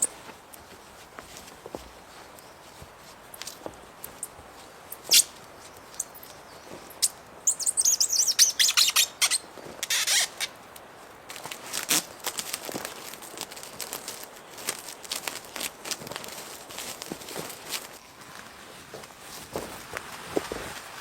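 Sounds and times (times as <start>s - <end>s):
bird chirping: 5.0s - 10.5s.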